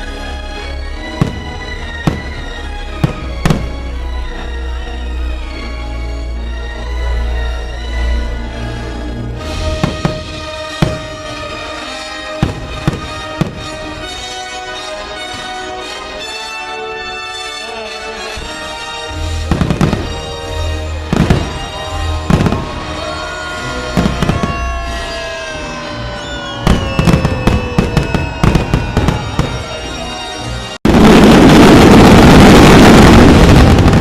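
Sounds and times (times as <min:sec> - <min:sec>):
loud orchestral music: 0:00.0 - 0:34.0
fireworks bursting: 0:01.1 - 0:03.9, 0:09.6 - 0:14.7, 0:18.4 - 0:34.0
crackling firework bursts: 0:19.4 - 0:30.2, 0:30.9 - 0:34.0.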